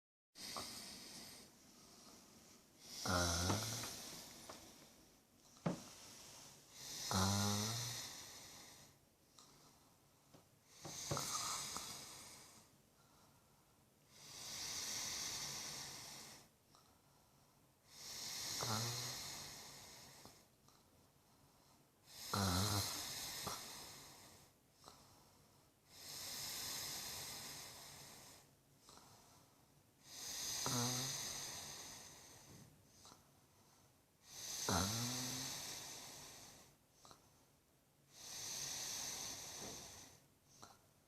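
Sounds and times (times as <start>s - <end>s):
woman snoring: 0.4s - 2.2s, 2.8s - 4.8s, 6.7s - 8.9s, 10.7s - 12.7s, 14.1s - 16.5s, 17.9s - 20.4s, 22.1s - 25.0s, 25.9s - 29.0s, 30.0s - 33.2s, 34.2s - 37.2s, 38.1s - 40.2s.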